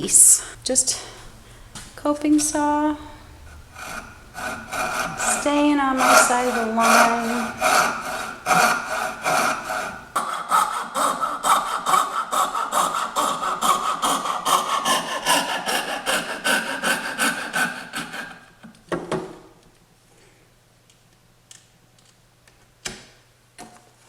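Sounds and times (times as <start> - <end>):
coping saw cutting wood: 3.4 - 18.5.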